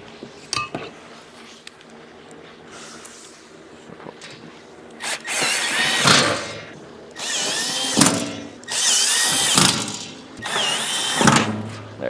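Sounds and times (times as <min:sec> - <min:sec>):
power drill driving screws: 0:05.0 - 0:12.0.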